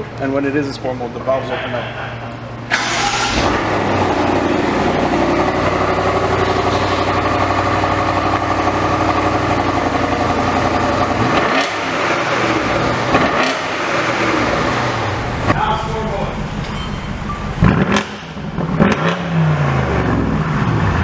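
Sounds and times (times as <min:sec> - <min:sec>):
car engine running: 0:02.5 - 0:21.0.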